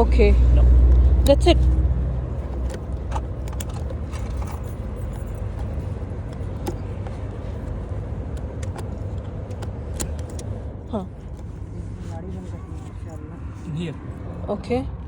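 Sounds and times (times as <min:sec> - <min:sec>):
low rumble from car: 0:00.0 - 0:15.0
car seat clicks and knocks: 0:05.4 - 0:07.8, 0:08.4 - 0:10.5.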